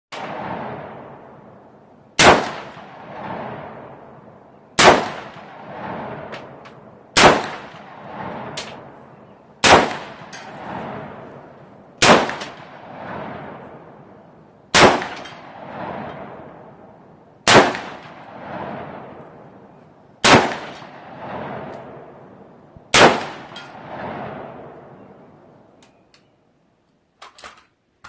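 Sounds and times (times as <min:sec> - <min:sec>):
rifle shots: 0:00.1 - 0:01.5, 0:02.2 - 0:09.0, 0:09.6 - 0:16.8, 0:17.4 - 0:19.5, 0:20.2 - 0:25.0
rolling echo of gunshots: 0:00.1 - 0:09.0, 0:09.6 - 0:25.2.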